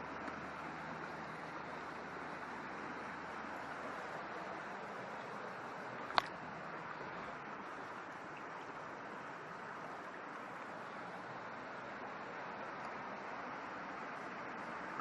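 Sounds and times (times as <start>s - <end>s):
rushing outdoor background noise: 0.0s - 15.0s.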